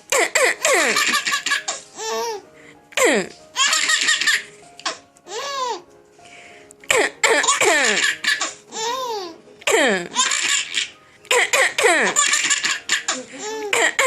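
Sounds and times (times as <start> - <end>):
baby laughing: 0.1 - 2.4, 3.6 - 5.8, 7.0 - 9.4, 10.1 - 14.0
person coughing: 3.0 - 3.4, 9.7 - 10.1, 11.3 - 12.2.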